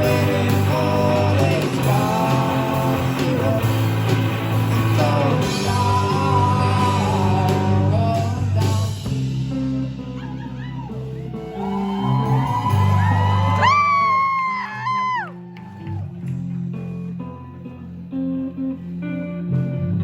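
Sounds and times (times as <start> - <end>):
lead singer singing: 0.0 - 9.3
rock band playing: 0.0 - 20.0.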